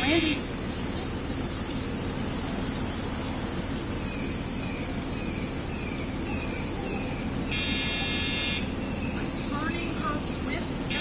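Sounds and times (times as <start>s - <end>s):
high hiss: 7.2s - 11.0s
electronic buzz: 7.4s - 8.8s, 10.5s - 11.0s.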